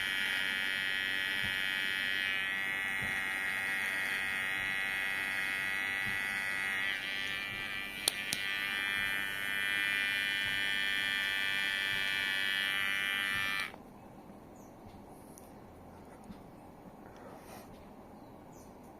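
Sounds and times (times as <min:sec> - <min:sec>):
electric hair clipper buzzing: 0:00.0 - 0:13.8
sharp clicks: 0:07.5 - 0:08.6.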